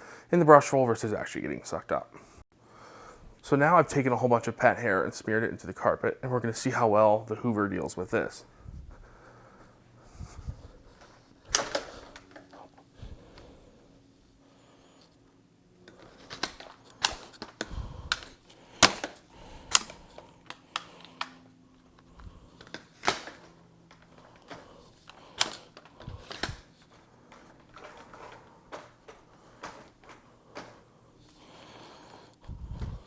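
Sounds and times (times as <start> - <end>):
clicks and knocks of handling: 15.8 - 21.4, 22.0 - 30.8.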